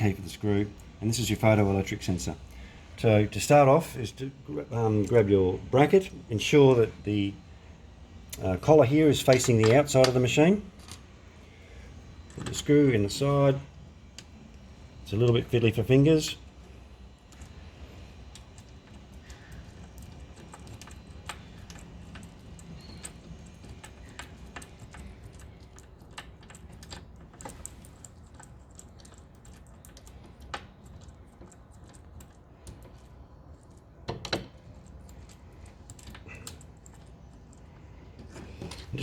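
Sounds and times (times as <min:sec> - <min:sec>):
metal parts clicking and tapping: 0:09.2 - 0:11.1, 0:16.2 - 0:39.0.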